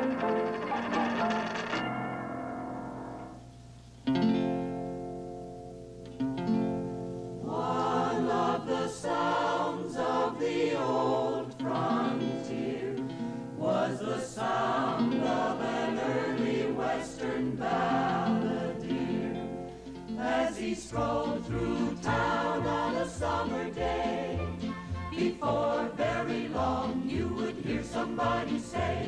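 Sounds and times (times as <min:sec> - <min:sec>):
instrumental accompaniment: 0:00.0 - 0:07.3, 0:20.9 - 0:29.0
choir singing: 0:07.4 - 0:29.0.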